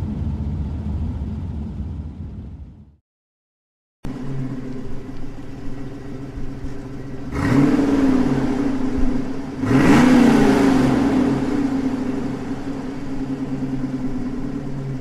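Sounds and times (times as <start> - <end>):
car engine starting and revving: 4.1 - 15.0.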